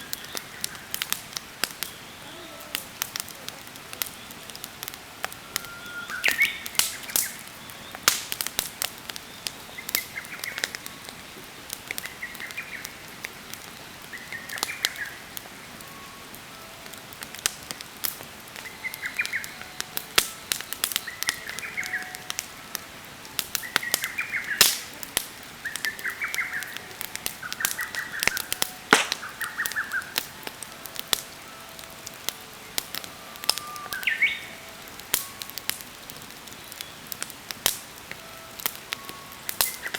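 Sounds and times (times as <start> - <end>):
campfire crackling and popping: 0.0 - 39.9
bird chirping: 5.4 - 8.1, 23.5 - 30.2.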